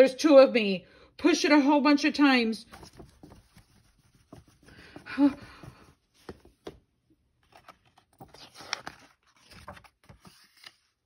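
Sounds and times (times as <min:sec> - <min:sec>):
paper rustle: 0:02.6 - 0:06.7, 0:07.4 - 0:11.0.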